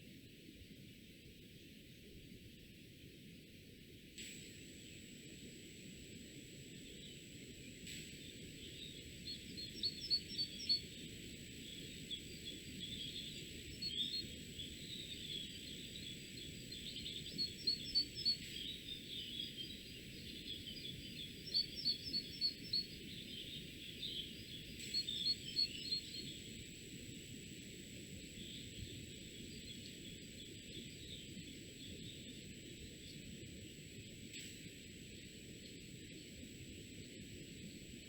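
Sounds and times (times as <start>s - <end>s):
low outdoor hiss: 0.0s - 38.0s
songbird singing: 6.8s - 33.4s.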